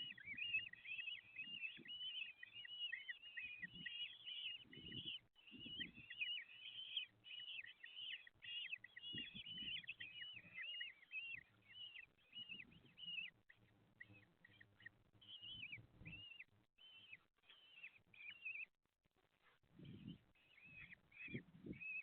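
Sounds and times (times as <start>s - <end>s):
chicks shrill begging calls: 0.0s - 13.4s.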